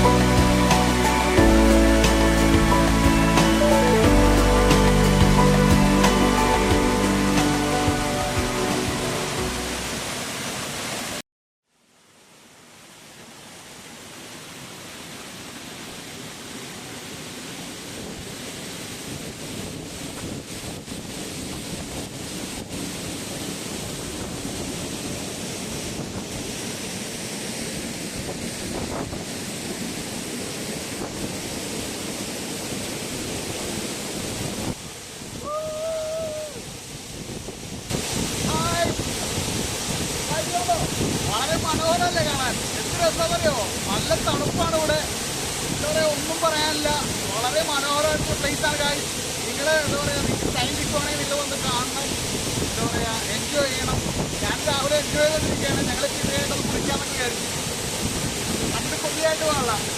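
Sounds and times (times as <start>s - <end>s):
music: 0.0s - 10.1s
waterfall rushing: 0.0s - 11.2s, 12.1s - 59.9s.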